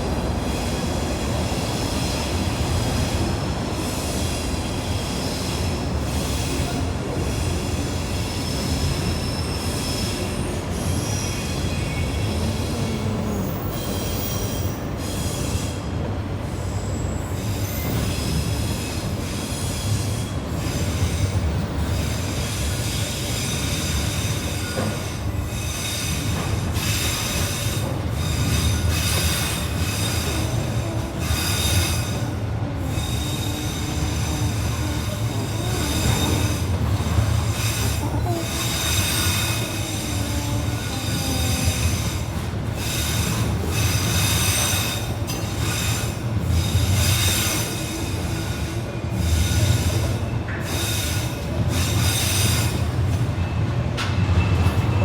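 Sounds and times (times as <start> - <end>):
train rumbling on rails: 0.0 - 55.0
high thin wheel squeal: 22.5 - 48.5.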